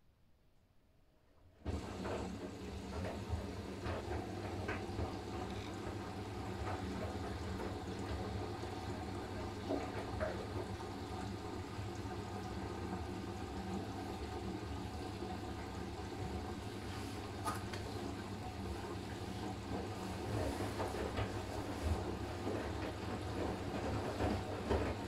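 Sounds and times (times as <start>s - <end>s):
water sloshing in washing machine: 1.6s - 25.0s.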